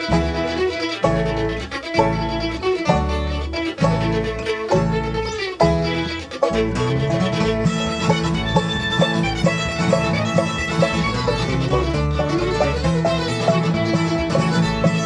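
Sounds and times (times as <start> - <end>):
bluegrass band playing: 0.0 - 15.0.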